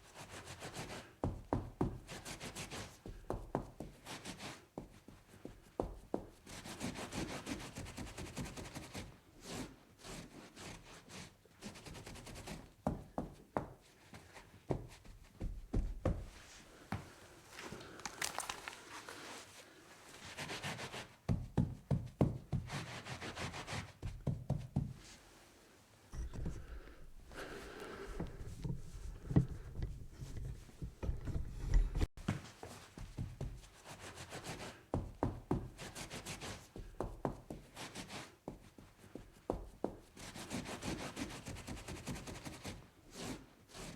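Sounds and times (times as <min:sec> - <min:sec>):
scrubbing on wooden tabletop: 0:17.5 - 0:19.5
light knocks and taps: 0:26.2 - 0:32.4.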